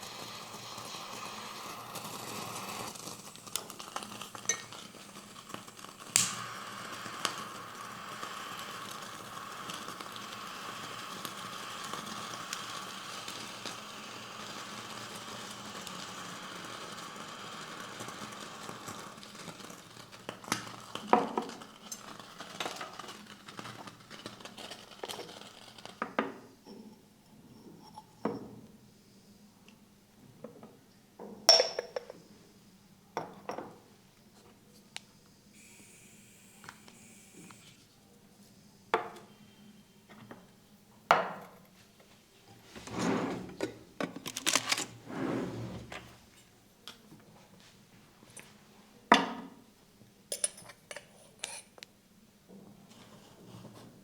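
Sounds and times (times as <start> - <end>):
steady rustling hiss: 41.8 - 46.8.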